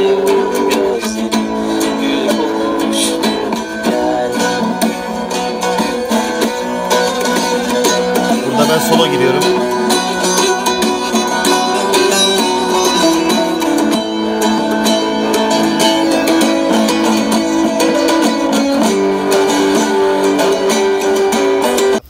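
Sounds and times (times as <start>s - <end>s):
guitar strumming: 0.0s - 22.0s
saz solo over speaker: 8.2s - 10.8s.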